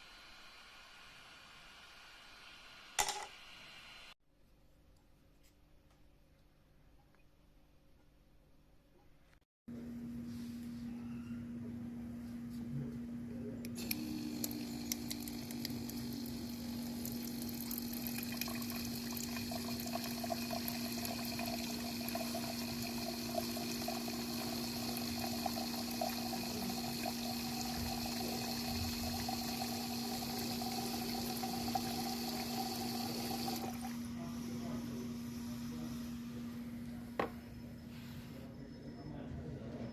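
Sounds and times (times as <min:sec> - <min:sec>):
pump humming: 0:13.8 - 0:36.4.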